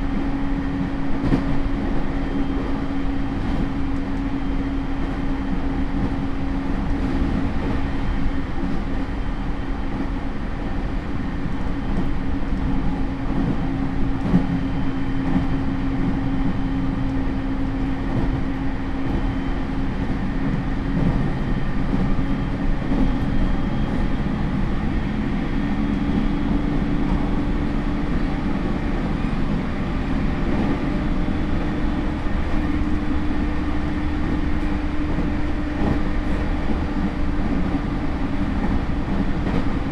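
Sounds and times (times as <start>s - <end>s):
train motor hum: 0.0s - 39.9s
wheel and rail rumble: 0.0s - 39.9s.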